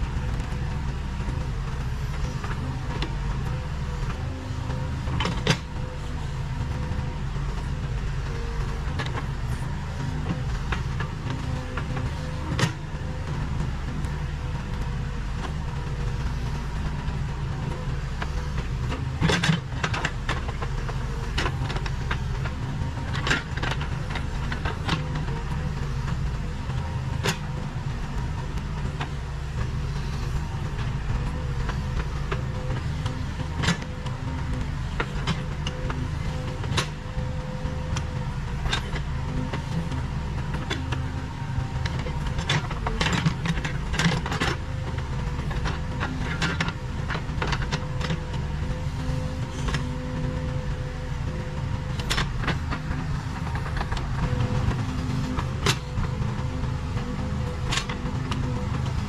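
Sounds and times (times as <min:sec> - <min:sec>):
diesel engine running: 0:00.0 - 0:59.0.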